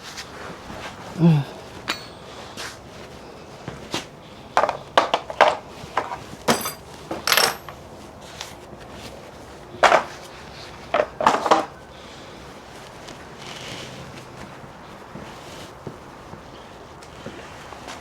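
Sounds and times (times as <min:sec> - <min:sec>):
hand tools and metal parts clinking: 0:01.8 - 0:02.8, 0:04.6 - 0:07.9.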